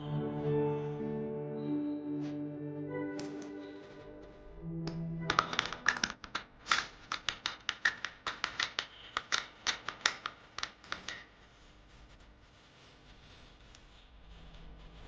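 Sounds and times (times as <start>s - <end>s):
sharp taps and clicks: 4.9s - 11.3s.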